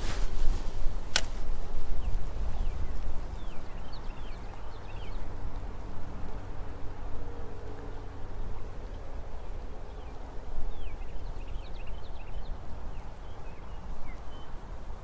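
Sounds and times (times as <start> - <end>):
wind buffeting microphone: 0.0 - 7.2
sharp click: 1.1 - 1.4.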